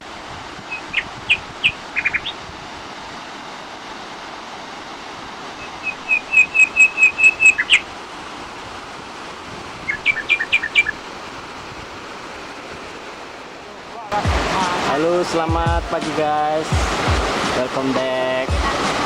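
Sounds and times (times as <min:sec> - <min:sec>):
songbird chirping: 0:00.7 - 0:02.4, 0:05.6 - 0:07.9, 0:09.9 - 0:11.0.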